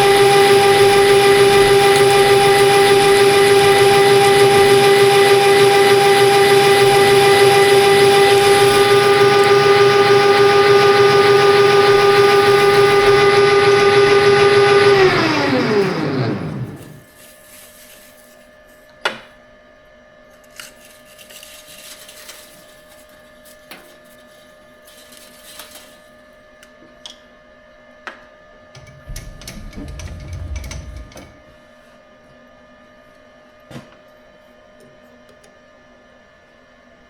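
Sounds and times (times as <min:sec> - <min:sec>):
machine hum: 0:00.0 - 0:17.1, 0:28.8 - 0:31.6
low rumble: 0:28.8 - 0:31.6.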